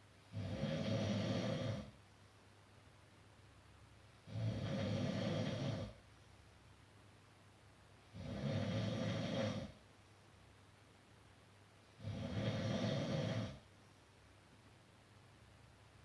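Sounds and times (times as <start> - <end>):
person snoring: 0.3 - 1.9, 4.2 - 6.0, 8.1 - 9.8, 12.0 - 13.6.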